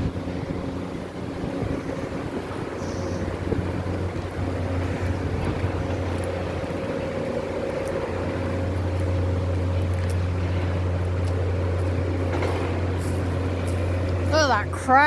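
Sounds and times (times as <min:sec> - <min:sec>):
low engine drone: 0:00.0 - 0:15.0.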